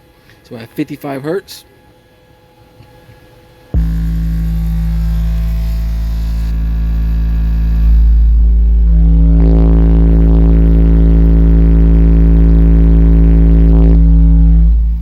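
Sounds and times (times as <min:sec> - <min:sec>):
bass test tone through subwoofers: 0:03.7 - 0:15.0.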